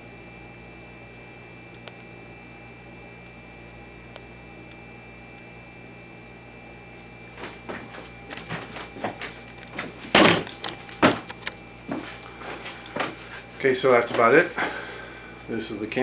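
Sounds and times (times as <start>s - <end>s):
faint electrical hum: 0.0s - 16.0s
loud thumps: 7.4s - 12.0s
knocks and handling noises: 7.4s - 14.8s.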